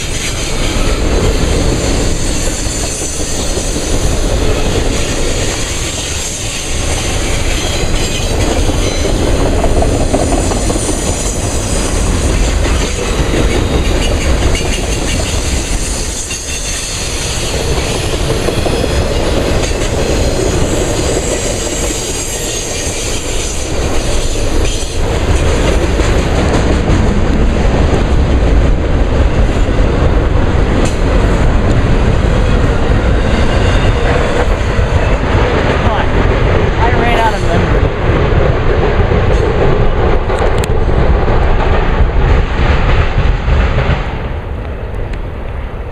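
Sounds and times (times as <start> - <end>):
freight train cars rolling past: 0.0 - 45.9.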